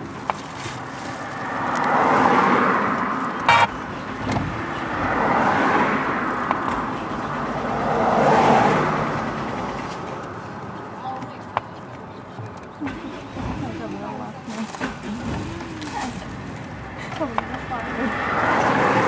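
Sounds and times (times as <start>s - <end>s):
road traffic noise: 0.0s - 19.0s
car horn toot: 3.5s - 3.8s.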